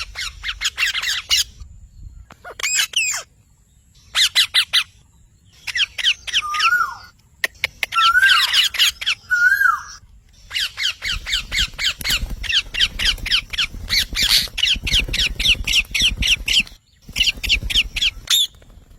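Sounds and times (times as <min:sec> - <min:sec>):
parrot squawking: 0:05.7 - 0:07.1, 0:07.9 - 0:18.5.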